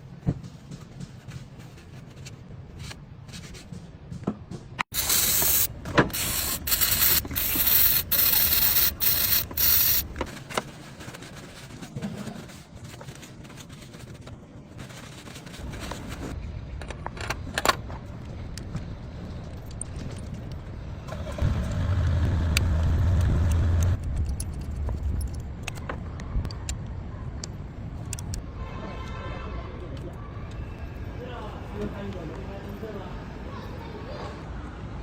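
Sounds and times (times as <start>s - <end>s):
pressurised spray hissing: 4.9s - 10.1s.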